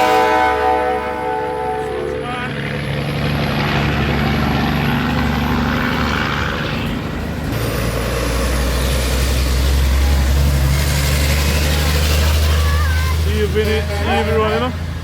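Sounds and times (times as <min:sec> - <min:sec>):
deep engine sound: 0:00.0 - 0:15.0
vehicle engines passing: 0:00.0 - 0:15.0.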